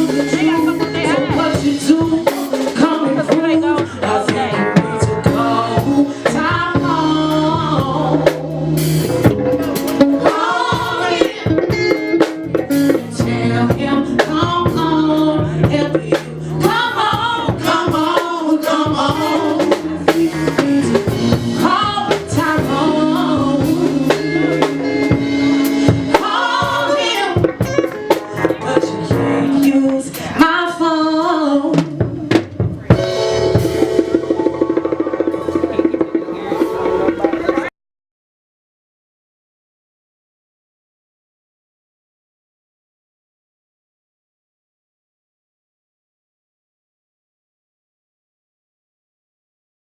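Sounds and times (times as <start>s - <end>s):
lead singer singing: 0.0s - 12.0s, 12.6s - 33.2s
congas: 0.0s - 37.7s
live band playing: 0.0s - 37.7s.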